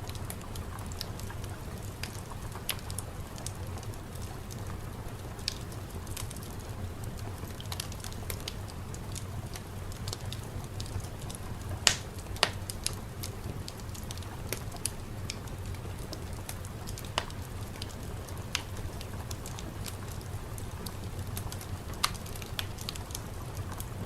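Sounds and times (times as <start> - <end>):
wood fire crackling: 0.0 - 24.0
fire popping: 0.1 - 24.0.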